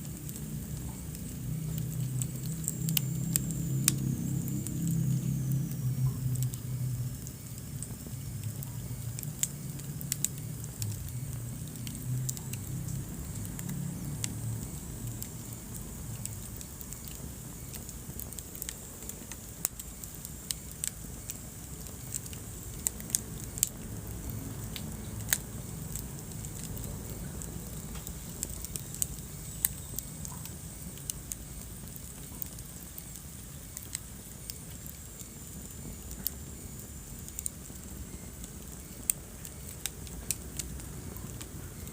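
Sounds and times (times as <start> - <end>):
low rumble of flame: 0.0 - 41.9
wood fire crackling and popping: 0.0 - 41.9.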